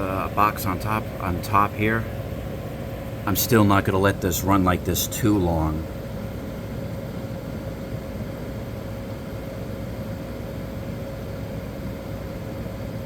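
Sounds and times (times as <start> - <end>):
air conditioner fan whooshing: 0.0 - 13.0
compressor hum: 0.0 - 13.0.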